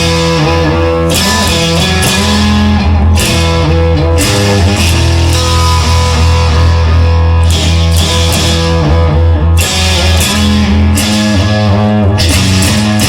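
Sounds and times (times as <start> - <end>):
instrumental rock music: 0.0 - 13.0.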